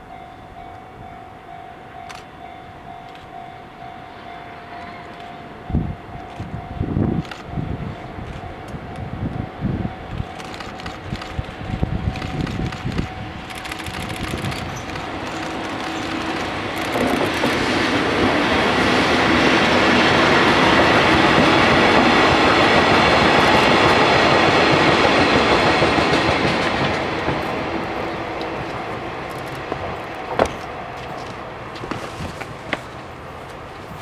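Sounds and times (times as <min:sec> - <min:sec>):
freight train passing: 0:00.0 - 0:34.0.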